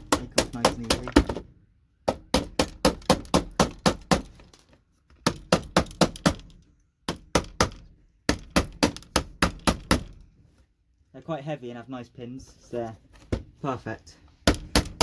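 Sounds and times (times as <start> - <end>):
rapid hammer strikes on metal: 0.0 - 1.2, 2.1 - 4.3, 5.2 - 6.5, 7.1 - 10.1, 14.5 - 15.0.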